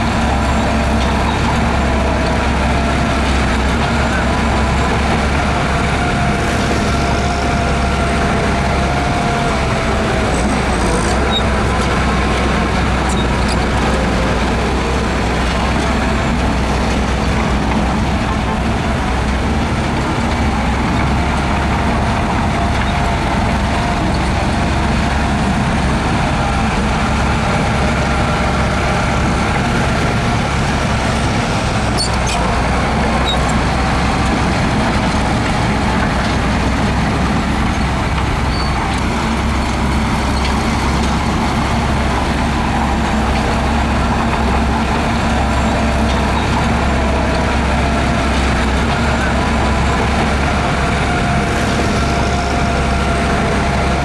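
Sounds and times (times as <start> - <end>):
heavy diesel engine droning: 0.0 - 54.0.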